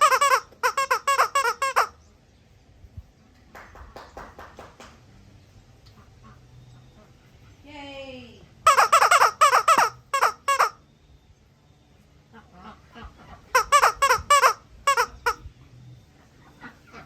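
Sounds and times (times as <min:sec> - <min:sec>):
squishy toy squeaking: 0:00.0 - 0:02.0, 0:08.7 - 0:10.8, 0:13.5 - 0:15.4.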